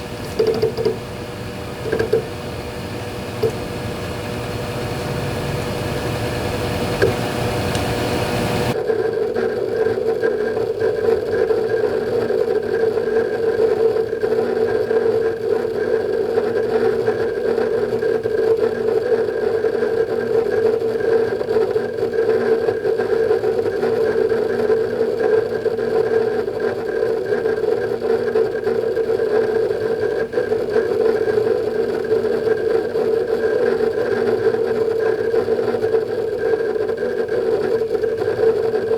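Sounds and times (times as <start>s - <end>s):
hard drive hum: 0.0s - 8.8s
hard drive seek clicking: 0.0s - 8.8s, 10.2s - 38.9s.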